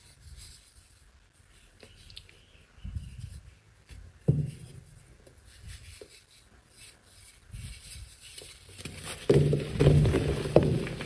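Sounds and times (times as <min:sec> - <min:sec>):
dry soap crumbling and scraping: 0:07.6 - 0:11.0.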